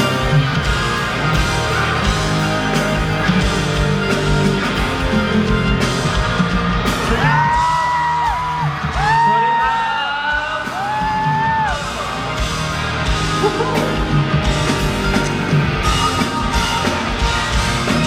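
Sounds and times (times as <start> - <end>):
live rock band playing: 0.0 - 18.0
high whoops: 7.2 - 11.9.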